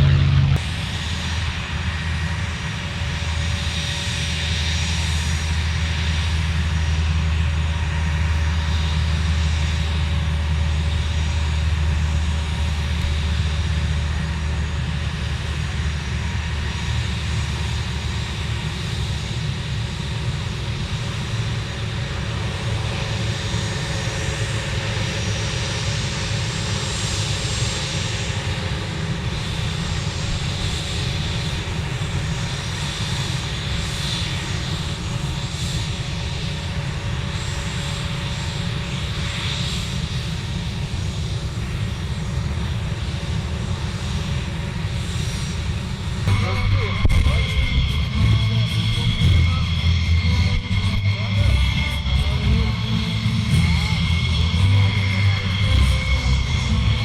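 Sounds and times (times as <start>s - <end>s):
aircraft engines droning: 0.0s - 57.0s
faint high whine: 46.3s - 57.0s.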